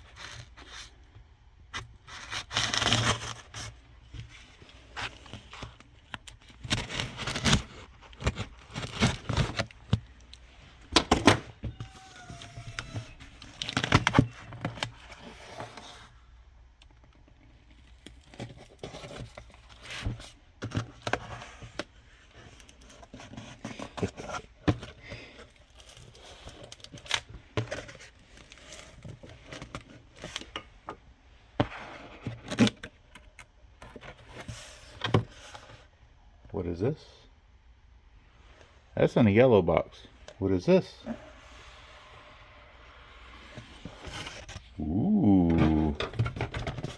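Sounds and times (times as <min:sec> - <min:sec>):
cardboard tearing and rustling: 0:01.8 - 0:16.2, 0:17.4 - 0:30.5, 0:41.1 - 0:46.9.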